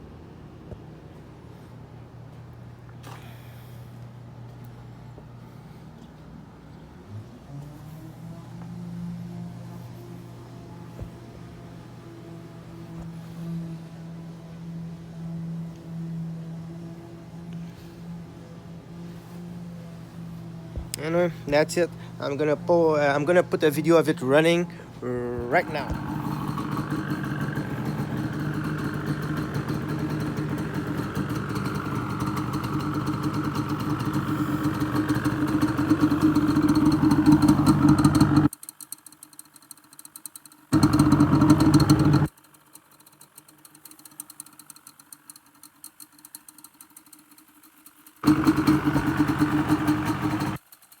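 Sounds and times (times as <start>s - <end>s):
two-stroke engine running: 25.0s - 51.0s.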